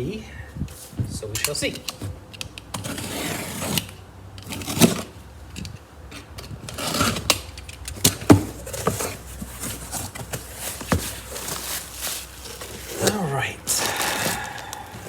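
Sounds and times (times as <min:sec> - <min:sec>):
packaging rustling: 0:09.0 - 0:15.0.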